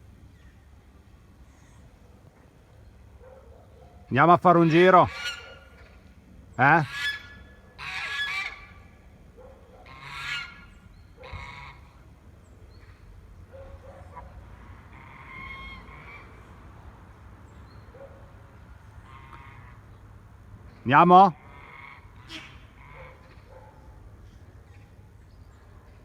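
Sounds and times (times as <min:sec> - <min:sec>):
short animal calls: 0:21.4 - 0:23.5.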